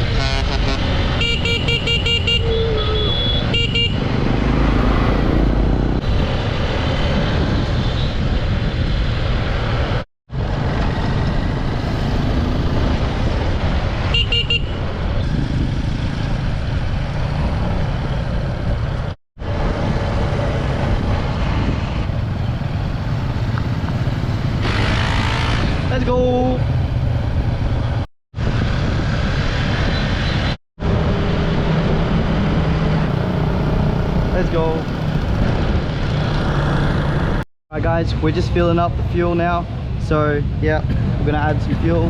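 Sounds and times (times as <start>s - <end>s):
horn toot: 0.0s - 4.2s
dirt bike engine and road noise: 0.0s - 42.0s
wind rumble on microphone: 4.0s - 14.1s, 14.7s - 42.0s.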